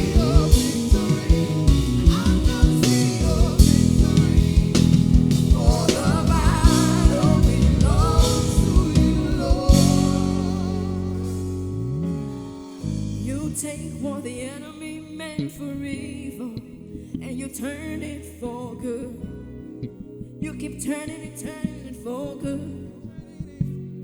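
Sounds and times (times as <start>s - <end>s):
person singing wordless melody: 0.0s - 12.4s
drum kit: 0.0s - 13.6s
sustained keyboard chords: 0.0s - 18.2s
bass: 0.0s - 24.0s.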